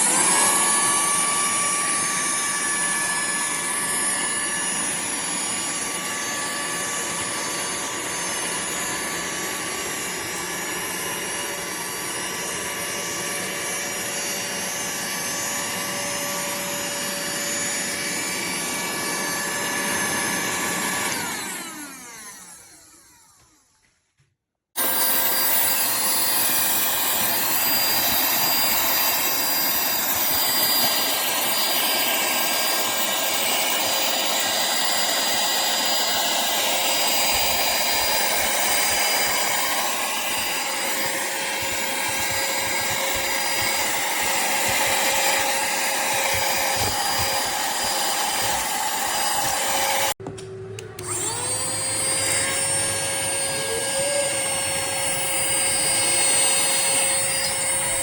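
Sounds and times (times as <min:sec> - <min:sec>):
cordless vacuum cleaner running: 0:00.0 - 0:23.8, 0:24.8 - 0:58.0.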